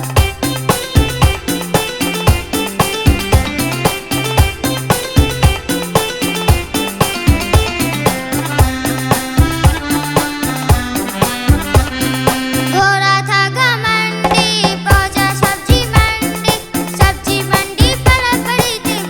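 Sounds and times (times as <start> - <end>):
wavering held melodic line: 0.0 - 12.8
children's song music: 0.0 - 19.0.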